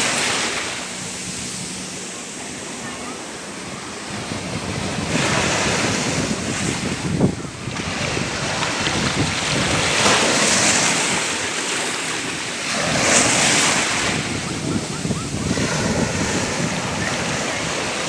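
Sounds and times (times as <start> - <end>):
ocean waves breaking on shore: 0.0 - 18.0
wind buffeting microphone: 3.6 - 18.0.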